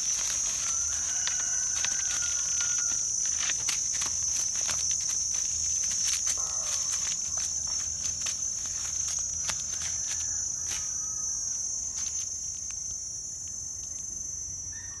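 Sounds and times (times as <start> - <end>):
high-pitched insect chorus: 0.0 - 15.0.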